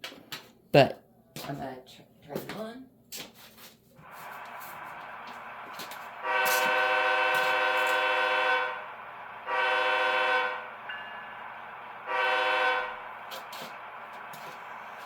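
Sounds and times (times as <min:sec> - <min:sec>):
model train air horn blasts: 0:04.0 - 0:15.0
steady running noise: 0:04.0 - 0:15.0.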